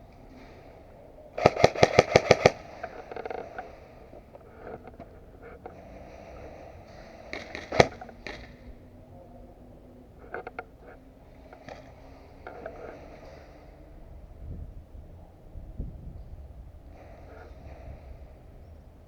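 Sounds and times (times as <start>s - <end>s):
airsoft gun firing: 1.4s - 3.4s, 7.3s - 8.6s.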